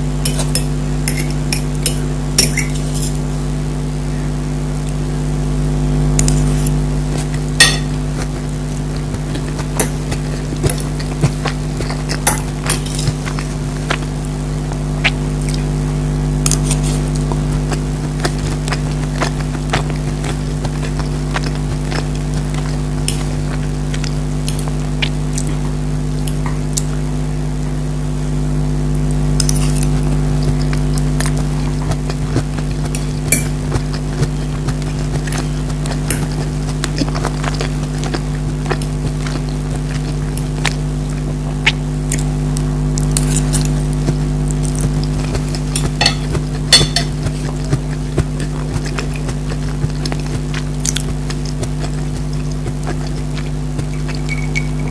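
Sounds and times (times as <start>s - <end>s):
steady low hum: 0.0s - 54.9s
cutlery clinking on a plate: 0.3s - 3.2s, 7.6s - 7.9s, 45.8s - 47.2s
mouth noises while eating: 5.9s - 54.9s.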